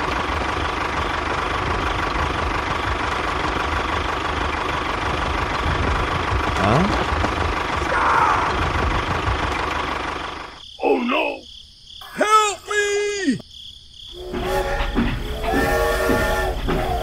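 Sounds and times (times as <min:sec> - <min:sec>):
voice exclamations: 0:12.0 - 0:13.4.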